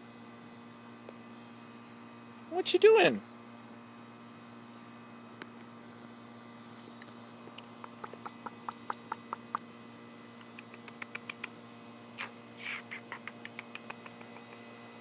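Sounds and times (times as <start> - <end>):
parrot beak clicks: 7.8 - 9.6, 10.4 - 11.6, 12.2 - 14.6.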